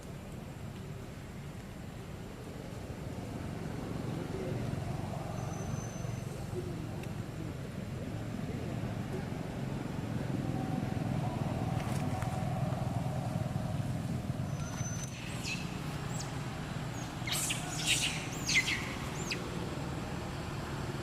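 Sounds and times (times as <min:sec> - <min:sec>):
low engine rumble: 0:00.0 - 0:21.0
high-pitched chirping calls: 0:14.5 - 0:19.5.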